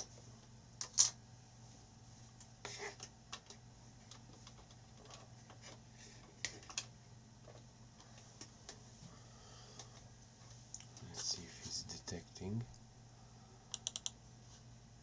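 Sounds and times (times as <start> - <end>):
low steady hum: 0.0 - 15.0
faint clicks and taps: 2.4 - 8.8.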